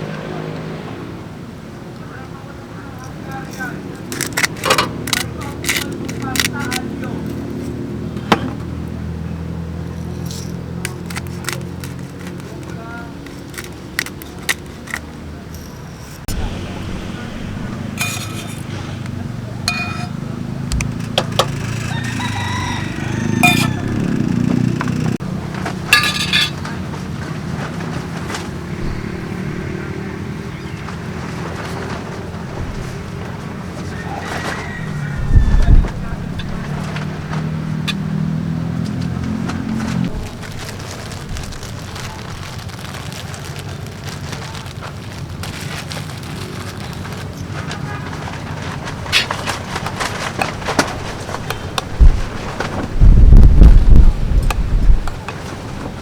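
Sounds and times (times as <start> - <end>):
utensils clinking: 2.9 - 9.0, 9.6 - 28.7, 38.8 - 53.0, 54.3 - 56.0.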